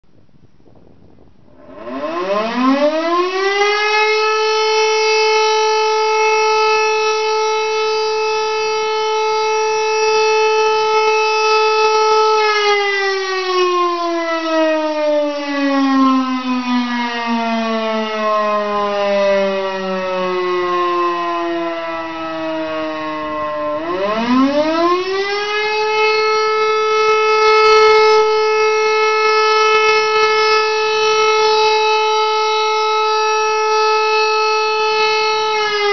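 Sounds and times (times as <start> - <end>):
motor siren wailing: 1.5 - 35.9.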